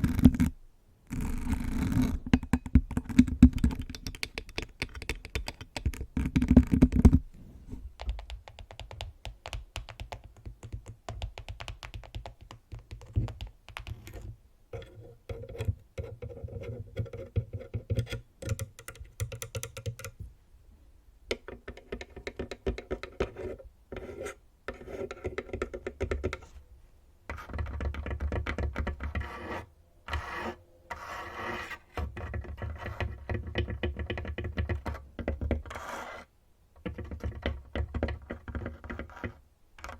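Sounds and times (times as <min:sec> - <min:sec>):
fingernails scratching on microphone: 0:01.1 - 0:02.3, 0:28.9 - 0:33.2, 0:35.6 - 0:36.3
fingernails tapping on tabletop: 0:21.3 - 0:23.4.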